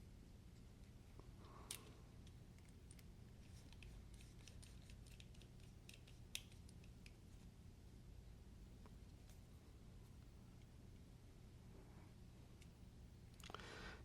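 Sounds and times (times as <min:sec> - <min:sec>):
small clicks of knife parts: 0:03.7 - 0:07.2.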